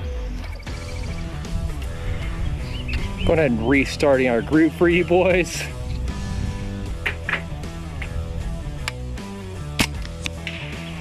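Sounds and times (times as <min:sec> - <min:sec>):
background music: 0:00.0 - 0:11.0
air rifle firing: 0:09.7 - 0:10.8.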